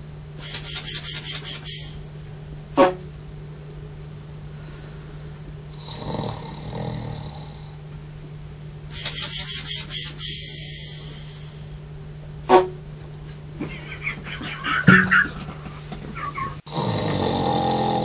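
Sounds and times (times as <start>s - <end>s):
steady low hum: 0.0s - 18.0s
sharp click: 0.4s - 1.8s, 9.0s - 10.2s
person snoring: 5.7s - 7.8s, 8.9s - 11.8s, 16.6s - 18.0s.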